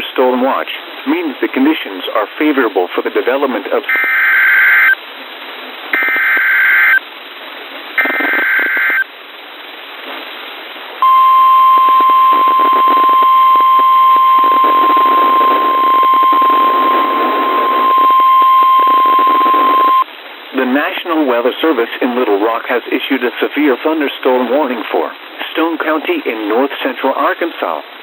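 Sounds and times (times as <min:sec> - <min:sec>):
radio static hiss: 0:00.0 - 0:28.0
steady warning alarm tone: 0:03.9 - 0:05.0, 0:11.0 - 0:20.0
warbling data bursts: 0:06.0 - 0:07.0, 0:08.0 - 0:09.0, 0:11.0 - 0:20.0.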